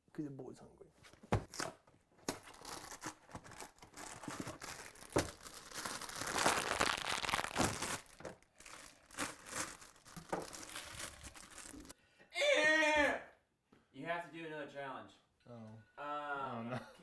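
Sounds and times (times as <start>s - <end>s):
package crinkling and tearing: 1.5s - 11.9s.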